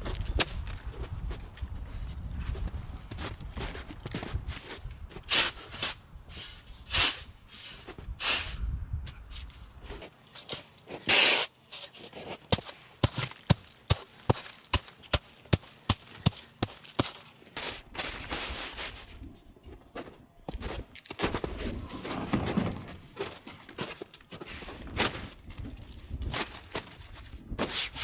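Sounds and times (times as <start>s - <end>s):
rustling crunching swishes: 17.2s - 20.1s.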